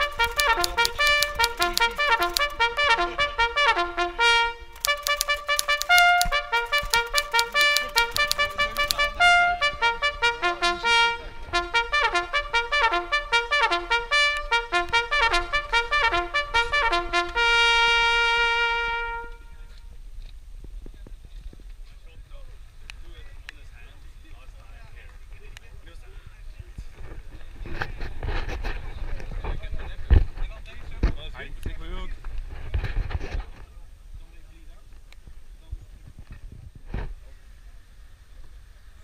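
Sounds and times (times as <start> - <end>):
trumpet playing fast notes: 0.0 - 19.4.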